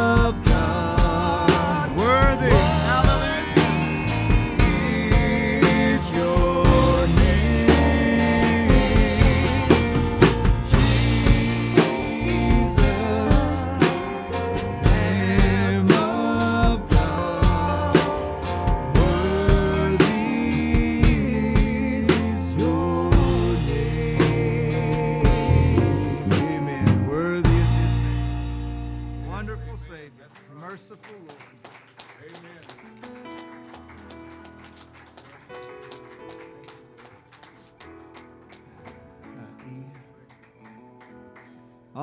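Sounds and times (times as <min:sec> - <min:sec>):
drum kit beat: 0:00.0 - 0:29.7
live worship band playing: 0:00.0 - 0:42.0.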